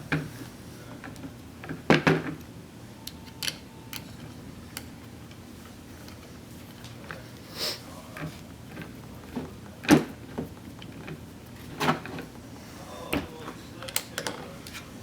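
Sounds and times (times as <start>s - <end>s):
clicks and knocks of parts handled: 3.2s - 5.4s, 13.8s - 14.8s.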